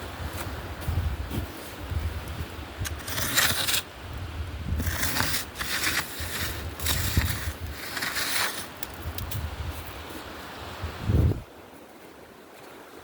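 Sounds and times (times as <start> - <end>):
footsteps crunching on a trail: 0.0 - 3.7, 4.8 - 10.6
wind rumble on microphone: 0.0 - 11.7.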